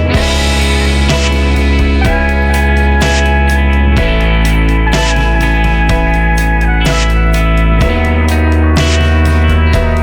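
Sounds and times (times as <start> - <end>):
guitar instrumental music: 0.0 - 10.0.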